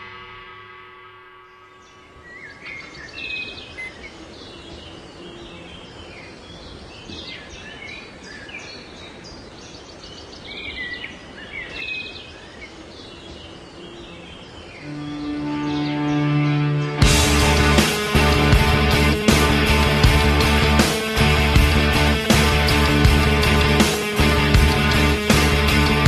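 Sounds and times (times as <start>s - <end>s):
steady outdoor hiss: 0.0s - 26.0s
wild birds chirping and trilling: 1.6s - 16.5s.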